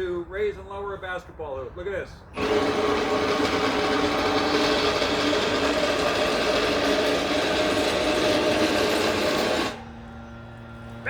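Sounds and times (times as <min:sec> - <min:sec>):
power drill motor whine: 0:02.3 - 0:11.0.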